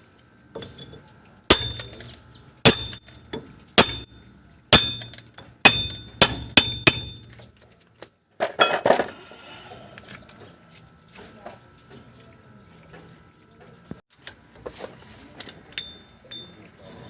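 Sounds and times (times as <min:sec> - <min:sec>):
hammer striking steel: 0:01.5 - 0:07.4.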